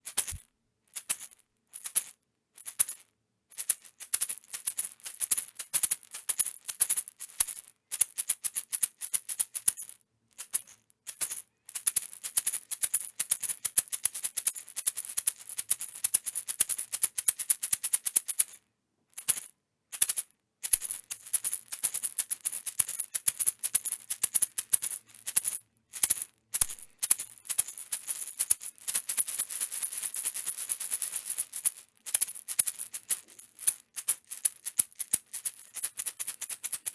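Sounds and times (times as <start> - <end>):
maraca rattling: 26.1 - 36.9.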